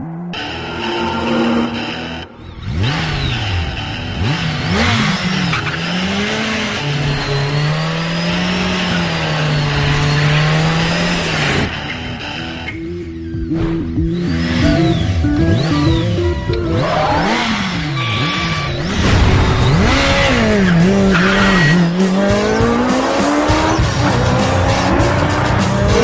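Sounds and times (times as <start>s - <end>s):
engine revving: 0.0s - 26.0s
music: 11.9s - 18.0s, 21.7s - 26.0s.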